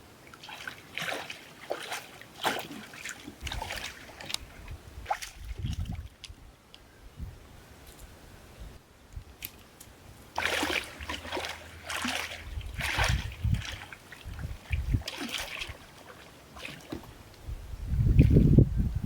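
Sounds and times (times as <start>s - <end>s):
water splashing: 0.2s - 6.3s, 10.3s - 17.4s.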